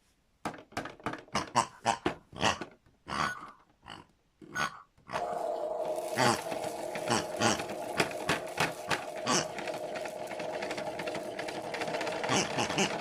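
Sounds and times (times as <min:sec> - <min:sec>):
pig grunting and oinking: 0:01.3 - 0:13.0
steady mechanical hum: 0:05.2 - 0:13.0.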